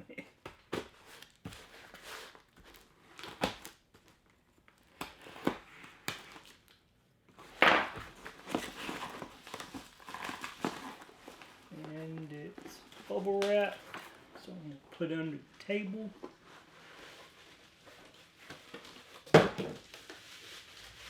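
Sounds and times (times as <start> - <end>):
bubble wrap crinkling: 0.3 - 21.0
cardboard box being opened: 8.0 - 14.2.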